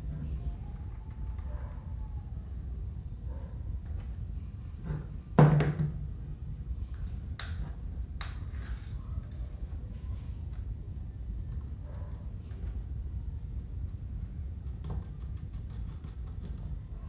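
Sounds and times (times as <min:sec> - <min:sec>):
hard object knocking: 0:04.9 - 0:06.0.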